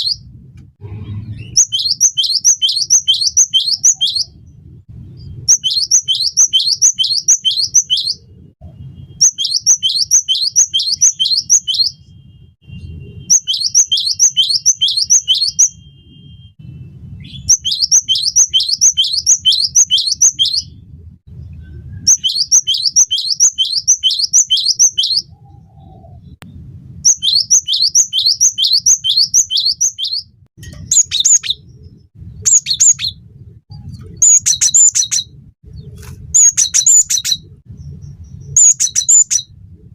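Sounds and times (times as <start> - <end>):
bird singing high falling notes: 1.2 - 4.5, 5.2 - 8.3, 9.2 - 12.1, 13.3 - 15.9, 17.2 - 20.8, 22.0 - 26.4, 27.0 - 35.4.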